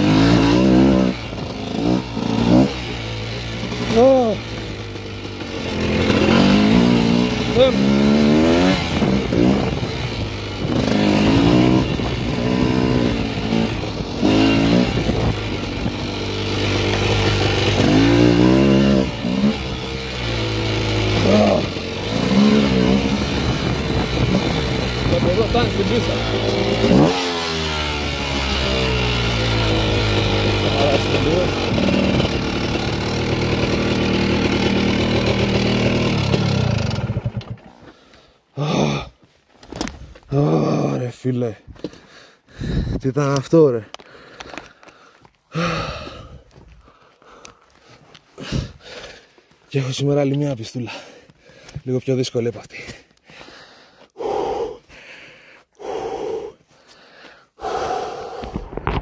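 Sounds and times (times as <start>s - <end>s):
two-stroke motorcycle engine revving: 0.0s - 39.1s, 40.3s - 41.0s, 45.5s - 46.3s.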